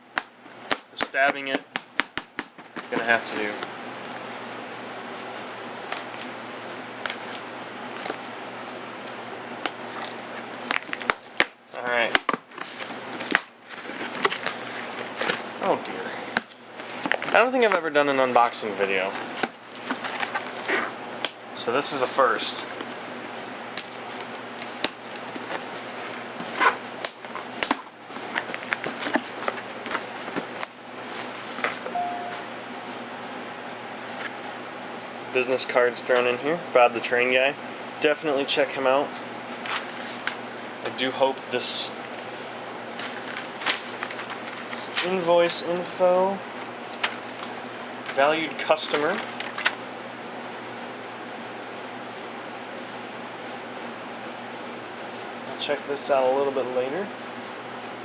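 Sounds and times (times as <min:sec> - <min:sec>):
cardboard box being rummaged: 0:02.6 - 0:03.7, 0:12.5 - 0:20.9, 0:22.0 - 0:32.0, 0:43.0 - 0:46.0
cardboard box snapping: 0:09.6 - 0:15.4
brief squeak: 0:31.9 - 0:32.5.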